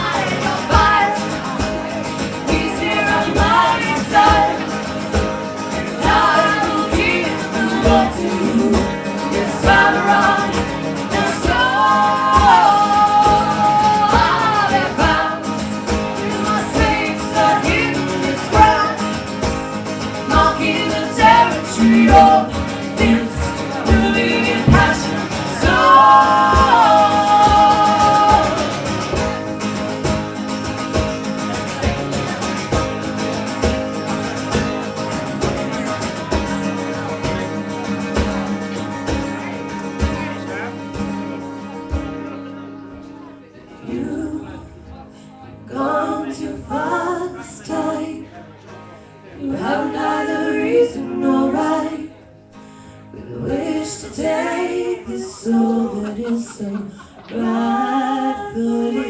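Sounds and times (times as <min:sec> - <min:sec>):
strummed acoustic guitar: 0:00.0 - 0:59.0
person singing: 0:06.0 - 0:15.5, 0:20.3 - 0:29.0, 0:53.2 - 0:59.0.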